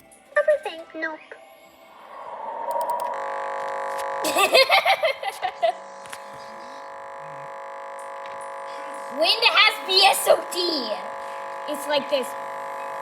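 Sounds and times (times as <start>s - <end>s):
electronic buzzing hum: 0.0s - 13.0s
person talking or laughing: 4.2s - 7.4s.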